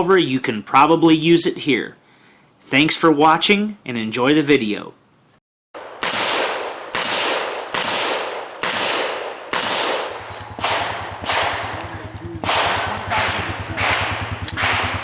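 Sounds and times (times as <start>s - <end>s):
revolver shots echoing: 5.8s - 15.0s
low buzz: 9.9s - 15.0s.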